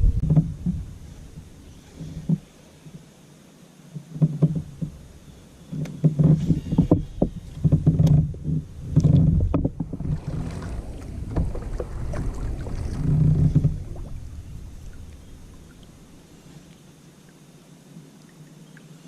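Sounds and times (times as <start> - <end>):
low hum: 6.4 - 16.9.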